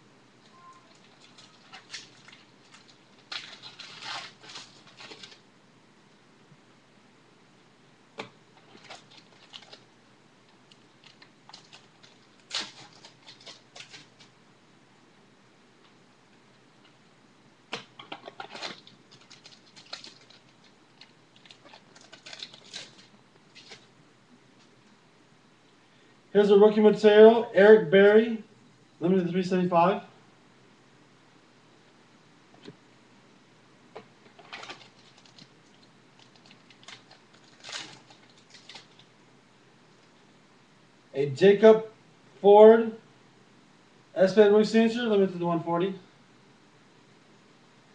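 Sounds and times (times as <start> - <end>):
packaging and cards crinkling: 0.9 - 5.4, 8.6 - 9.9, 10.7 - 14.3, 17.8 - 23.9, 34.2 - 39.1.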